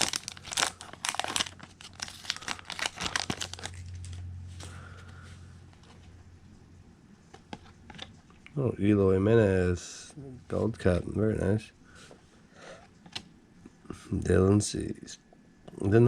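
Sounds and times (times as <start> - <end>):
foil wrapper tearing and crinkling: 0.0 - 4.2.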